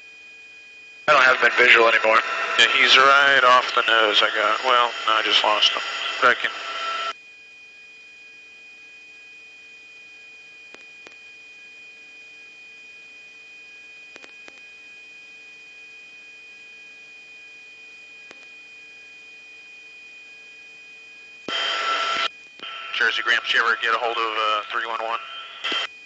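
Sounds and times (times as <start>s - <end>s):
electronic hum and whine: 0.0s - 26.0s
burst of radio noise: 1.1s - 7.1s, 21.5s - 25.9s.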